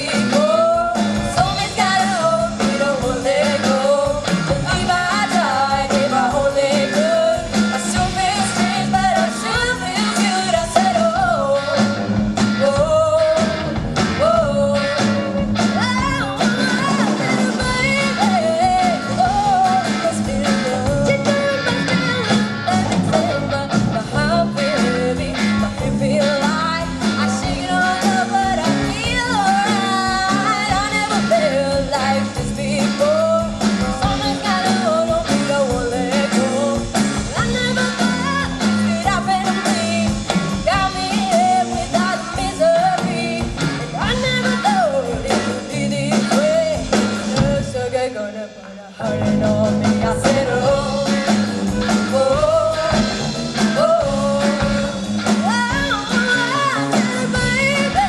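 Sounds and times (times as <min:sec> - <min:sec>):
live rock band playing: 0:00.0 - 0:58.0.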